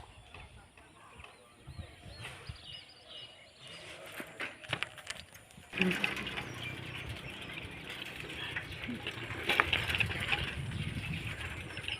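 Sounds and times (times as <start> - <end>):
small birds chirping: 5.6 - 11.9.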